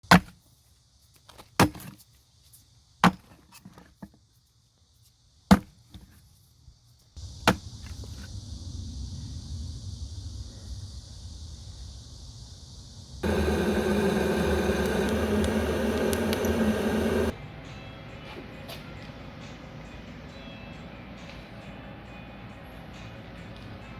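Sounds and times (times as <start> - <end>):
chopping strikes on wood: 0.1 - 0.4, 3.0 - 3.3, 5.5 - 5.7
steady rushing noise: 13.2 - 17.4.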